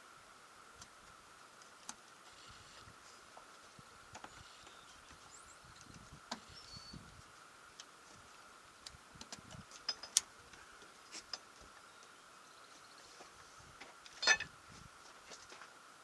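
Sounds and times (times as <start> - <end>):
clattering rattle: 14.2 - 14.5.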